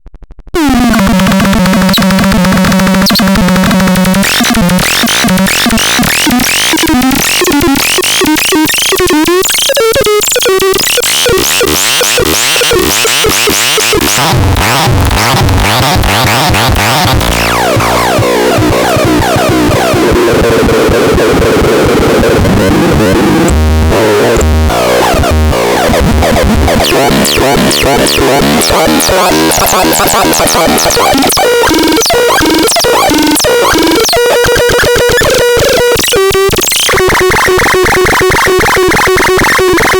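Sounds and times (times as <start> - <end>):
electronic synthesized tones: 0.6 - 39.9.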